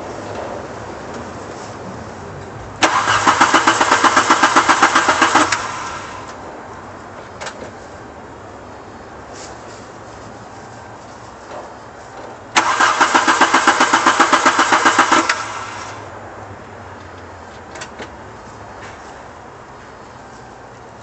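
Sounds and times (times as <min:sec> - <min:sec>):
car starter motor cranking: 0:02.8 - 0:06.4, 0:12.5 - 0:16.0.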